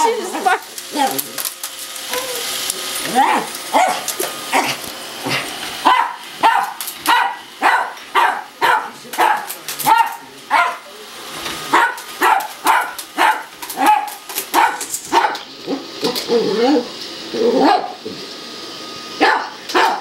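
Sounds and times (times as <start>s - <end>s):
dog whining: 2.1s - 4.9s, 15.6s - 18.0s
dog barking: 3.8s - 4.0s, 5.8s - 10.8s, 11.7s - 15.4s, 17.6s - 18.0s, 19.2s - 20.0s.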